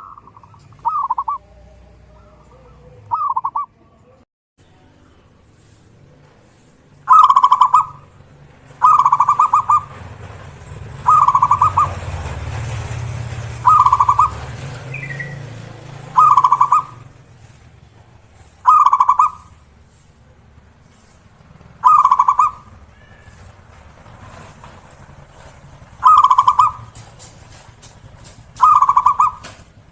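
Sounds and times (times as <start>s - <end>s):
dove cooing trilled song: 0.0s - 3.8s, 7.0s - 10.1s, 11.0s - 12.1s, 13.5s - 17.4s, 18.6s - 19.7s, 21.8s - 23.4s, 25.9s - 27.3s, 28.3s - 29.9s.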